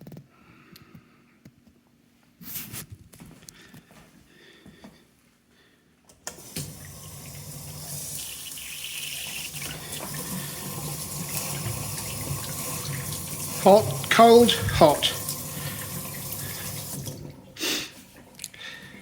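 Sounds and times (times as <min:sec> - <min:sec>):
tap water running into sink: 0:06.3 - 0:19.0.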